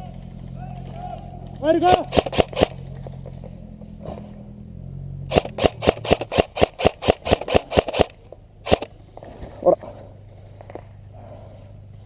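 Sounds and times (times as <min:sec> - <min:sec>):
airsoft rifle shots: 0:00.0 - 0:03.1, 0:05.3 - 0:09.0
vehicle engine humming low: 0:00.0 - 0:12.0.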